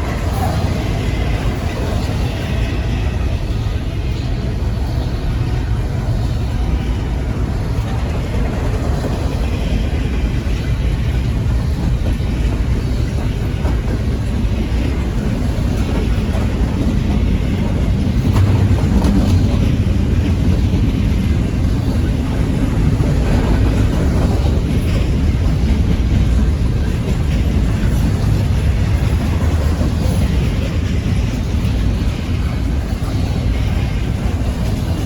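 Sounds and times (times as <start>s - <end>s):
freight train rumbling past: 0.0s - 35.0s.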